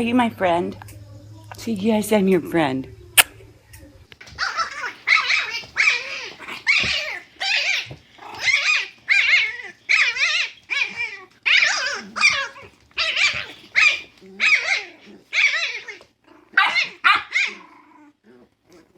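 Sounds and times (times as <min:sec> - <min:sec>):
dog barking and whining: 0:04.2 - 0:18.1.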